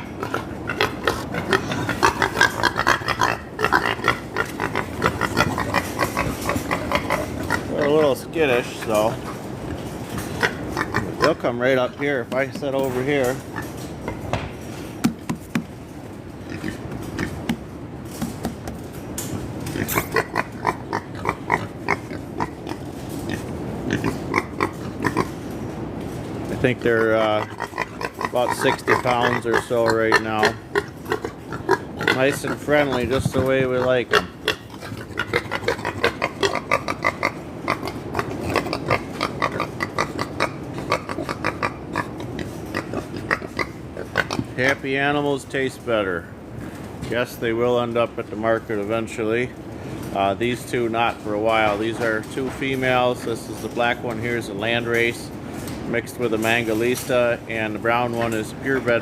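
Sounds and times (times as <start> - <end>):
pigs grunting: 0.0 - 15.6, 16.4 - 45.4
storm wind rushing: 0.0 - 36.0
steady low noise: 0.0 - 59.0.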